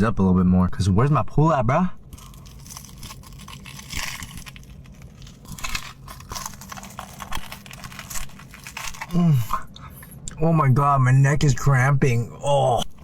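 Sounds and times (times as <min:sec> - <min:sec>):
low electrical hum: 0:00.0 - 0:13.0
crunchy chewing: 0:02.0 - 0:10.1.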